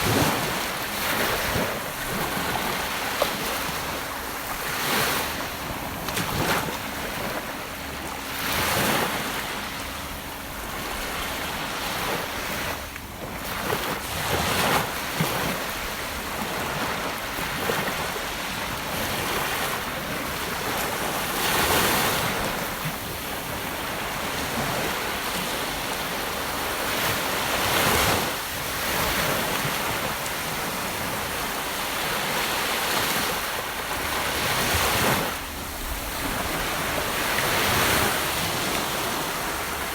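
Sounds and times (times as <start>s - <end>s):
ocean waves on beach: 0.0s - 39.9s.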